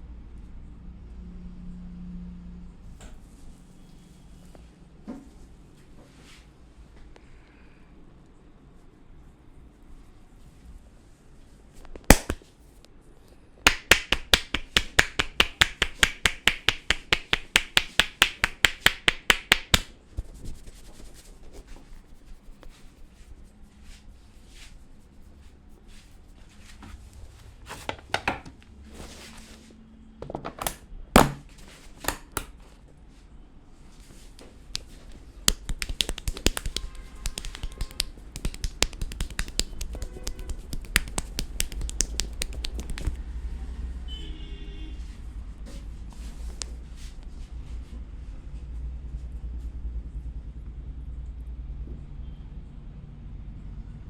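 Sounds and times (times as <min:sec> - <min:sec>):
light taps: 0:34.8 - 0:43.2.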